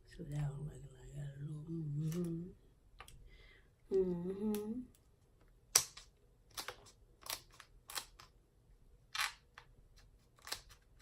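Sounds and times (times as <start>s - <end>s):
shellfish shells cracking: 5.7s - 8.3s, 10.3s - 11.0s.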